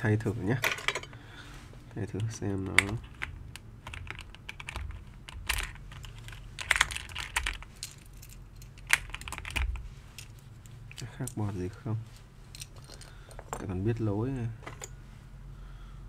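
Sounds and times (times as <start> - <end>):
mechanical keyboard key clacks: 2.6 - 7.6.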